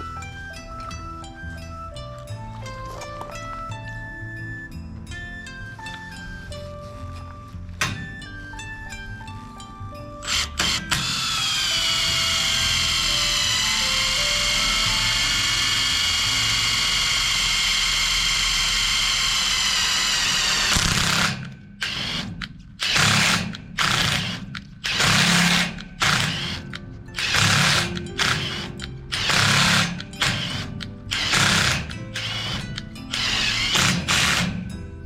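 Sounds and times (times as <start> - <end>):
power tool motor whining: 10.2 - 34.7.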